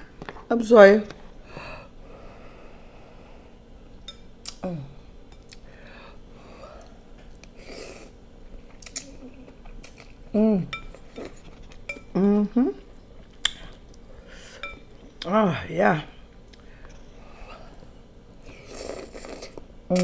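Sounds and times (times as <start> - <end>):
person chewing: 5.4 - 5.7, 6.8 - 12.2, 12.8 - 15.4, 16.4 - 20.0
utensils clinking on dishes: 10.7 - 12.1, 14.6 - 14.9.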